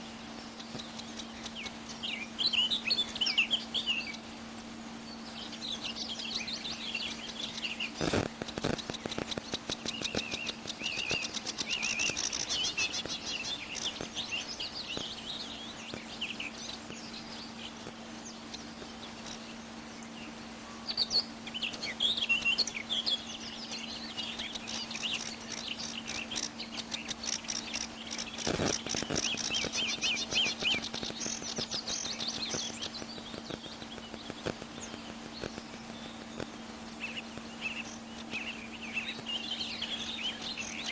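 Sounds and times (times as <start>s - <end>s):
small birds chirping and trilling: 0.0s - 40.9s
steady low hum: 0.0s - 40.9s
sharp clicks: 8.0s - 15.1s, 24.4s - 36.6s.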